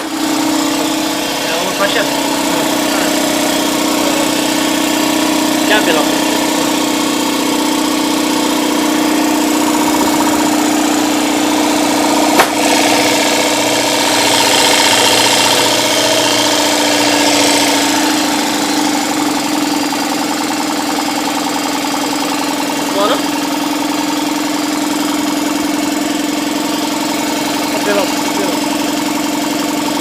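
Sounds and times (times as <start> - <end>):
air compressor humming: 0.0 - 30.0
sharp click: 12.4 - 12.6.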